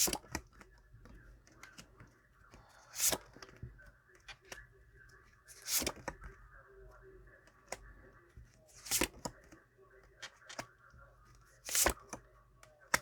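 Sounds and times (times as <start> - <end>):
cards being shuffled: 2.9 - 3.6, 5.5 - 6.2, 8.8 - 9.4, 11.6 - 12.2.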